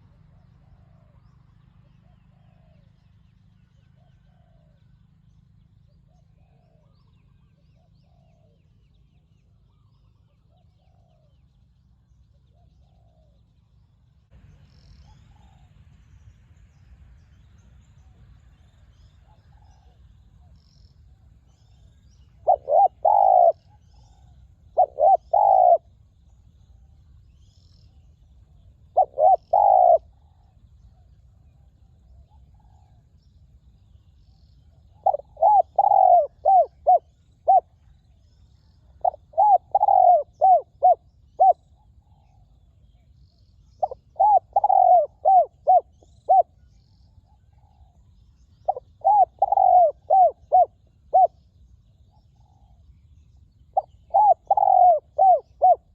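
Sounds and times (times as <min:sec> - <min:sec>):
dove cooing: 0:19.2 - 0:20.6, 0:21.6 - 0:25.9, 0:28.8 - 0:31.0, 0:34.9 - 0:37.9, 0:38.9 - 0:42.4, 0:43.8 - 0:46.6, 0:48.7 - 0:51.4, 0:53.8 - 0:55.9.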